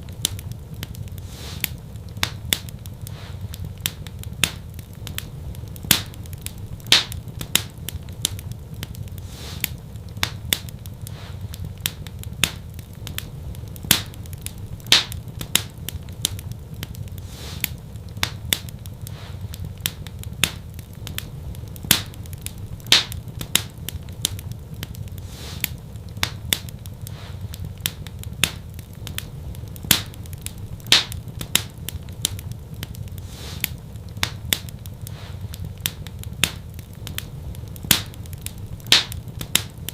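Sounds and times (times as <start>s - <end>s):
wood fire crackling and popping: 0.0s - 39.9s.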